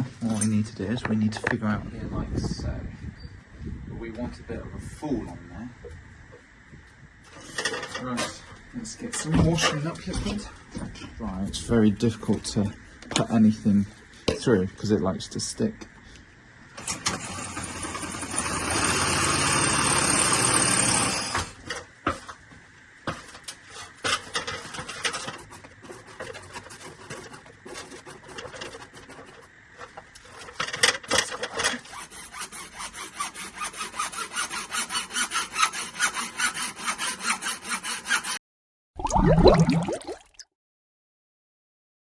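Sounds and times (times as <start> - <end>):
rasping on plastic pipe: 24.7 - 30.5.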